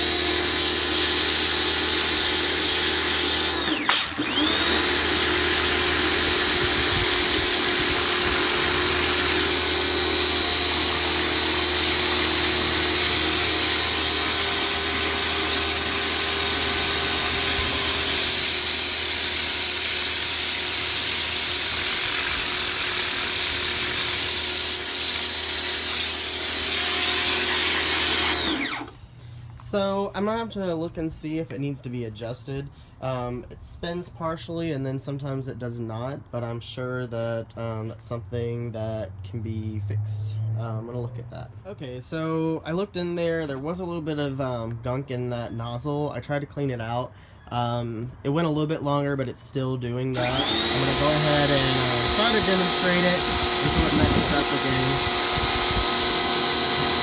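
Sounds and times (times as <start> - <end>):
pressure washer running: 0.0 - 29.2, 50.1 - 57.0
water spraying: 50.2 - 57.0.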